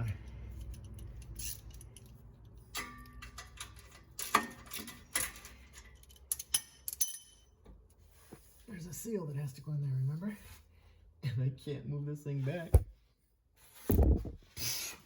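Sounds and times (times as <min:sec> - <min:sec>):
metal tools clinking: 0:00.2 - 0:07.6.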